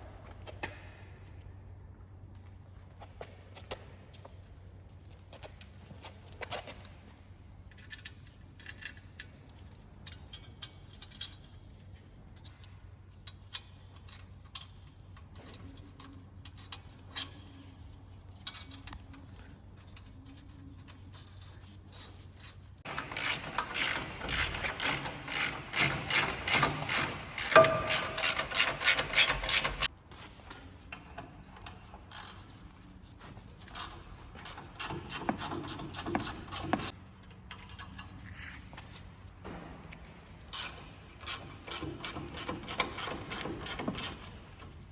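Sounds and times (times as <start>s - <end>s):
rapid repeated tool strokes: 21.1s - 29.9s, 33.4s - 37.0s, 40.5s - 44.9s
tool taps on metal: 27.4s - 28.4s.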